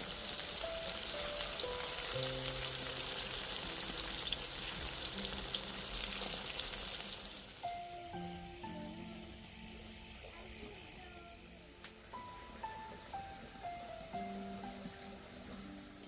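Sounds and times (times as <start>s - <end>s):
food frying in hot oil: 0.0s - 16.0s.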